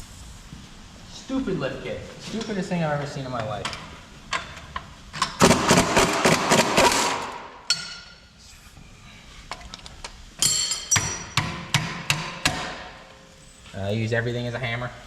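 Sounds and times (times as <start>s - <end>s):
metal tools clanking: 10.4s - 11.4s.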